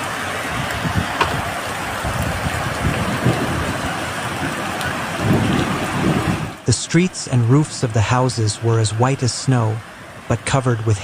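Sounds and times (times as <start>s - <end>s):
hail and heavy rain falling: 0.0s - 6.5s.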